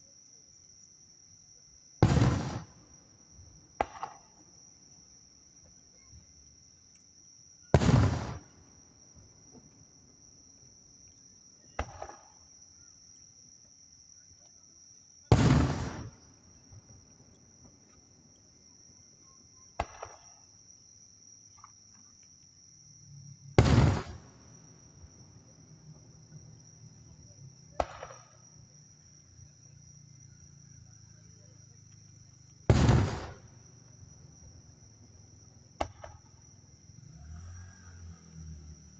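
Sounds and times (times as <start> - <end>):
insects chirring: 0.0 - 38.9
sharp firework bang: 2.0 - 2.8, 3.8 - 4.2, 7.8 - 8.4, 15.3 - 16.2, 19.8 - 20.2, 23.6 - 24.3, 27.8 - 28.4, 32.7 - 33.5
fireworks booming: 2.0 - 2.9, 3.8 - 4.4, 7.7 - 8.6, 11.8 - 12.4, 15.3 - 16.9, 19.8 - 20.4, 23.5 - 24.9, 27.8 - 28.4, 32.6 - 33.6, 35.7 - 36.3.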